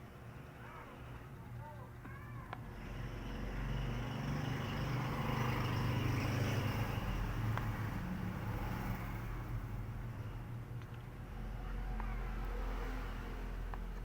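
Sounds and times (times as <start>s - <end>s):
vehicle engine passing: 2.8s - 10.4s, 11.2s - 14.0s.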